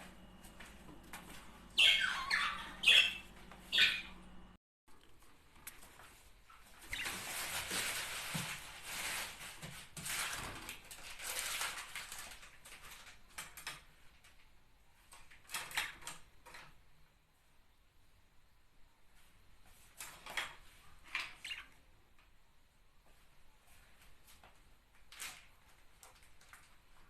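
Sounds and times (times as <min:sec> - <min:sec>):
budgerigars chattering: 0:01.7 - 0:04.2.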